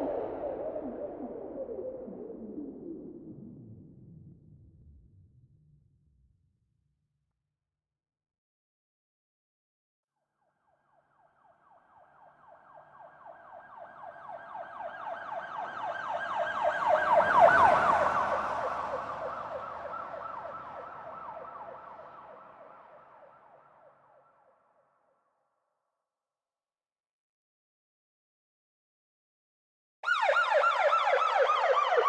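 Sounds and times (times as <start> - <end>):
police siren yelping: 12.2 - 22.8, 30.0 - 32.0.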